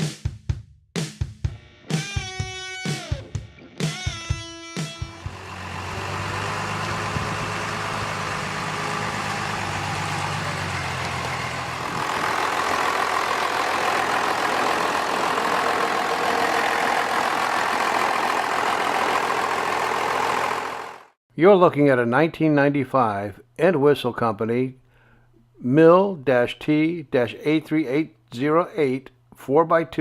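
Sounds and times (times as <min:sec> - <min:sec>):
diesel engine idling: 0:05.2 - 0:21.2.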